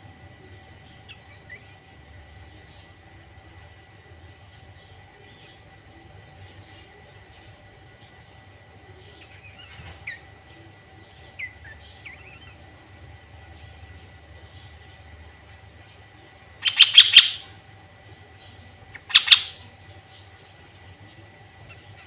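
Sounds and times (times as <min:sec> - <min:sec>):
bird chirping: 0:16.6 - 0:17.6, 0:18.3 - 0:20.4
bird rapid call notes: 0:16.6 - 0:17.6, 0:18.4 - 0:20.3.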